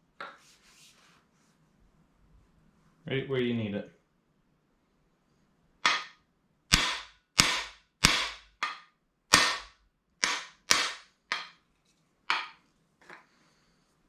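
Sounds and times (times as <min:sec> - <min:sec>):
hammer striking metal tool: 0:05.8 - 0:11.6, 0:12.3 - 0:12.6.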